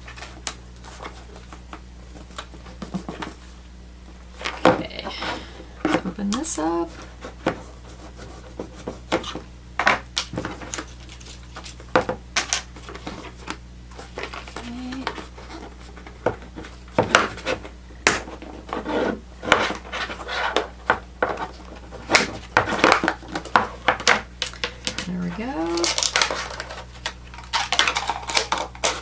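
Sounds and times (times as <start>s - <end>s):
packaging rustling and scraping: 0.0s - 3.7s, 10.2s - 11.9s, 12.5s - 29.0s.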